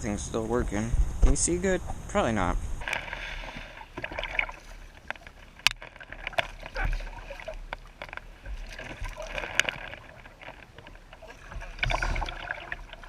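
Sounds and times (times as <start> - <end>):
kayak paddling through water: 2.7 - 13.0.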